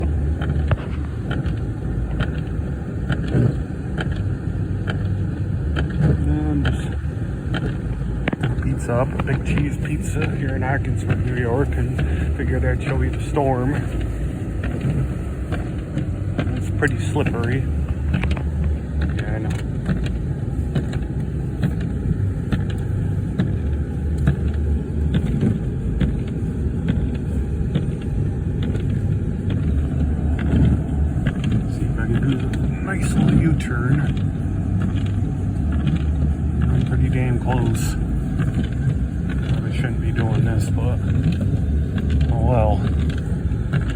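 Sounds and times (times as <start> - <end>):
car engine rumble: 0.0 - 43.9.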